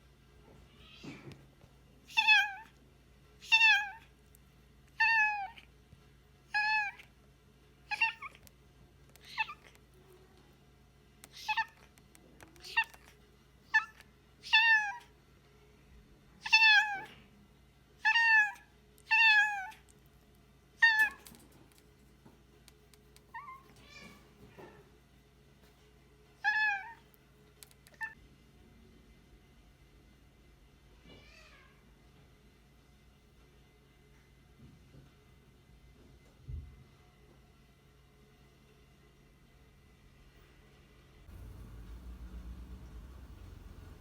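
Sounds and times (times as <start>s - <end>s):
cat meowing: 2.1s - 2.7s, 3.4s - 4.0s, 5.0s - 5.7s, 6.5s - 7.0s, 7.9s - 8.4s, 9.2s - 9.8s, 11.3s - 11.9s, 12.6s - 13.1s, 13.7s - 15.1s, 16.4s - 17.2s, 18.0s - 19.8s, 20.8s - 21.3s, 26.4s - 27.0s, 27.8s - 28.2s.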